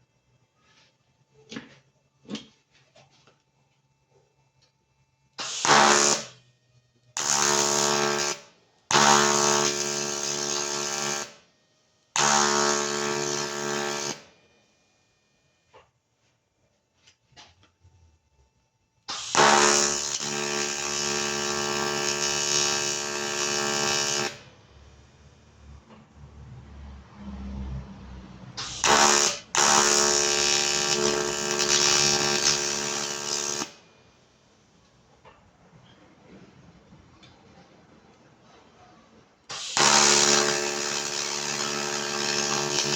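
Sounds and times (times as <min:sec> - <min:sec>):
welding arc buzzing: 0:05.4 - 0:06.4, 0:07.2 - 0:11.4, 0:12.2 - 0:14.2, 0:19.1 - 0:24.4, 0:28.6 - 0:33.8, 0:39.5 - 0:42.9.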